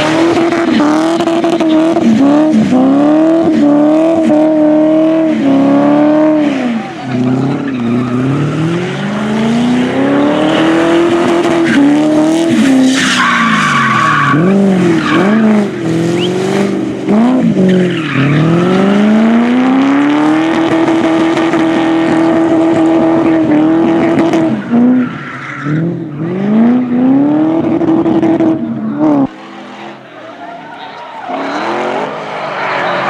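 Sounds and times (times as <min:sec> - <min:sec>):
car engine revving hard: 0:00.0 - 0:30.1, 0:31.3 - 0:33.0
tyres screeching: 0:10.0 - 0:16.4.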